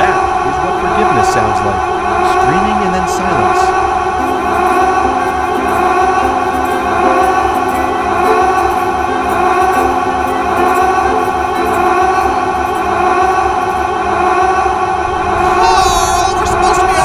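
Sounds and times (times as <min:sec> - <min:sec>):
layered voices droning ahhh: 0:00.0 - 0:17.0.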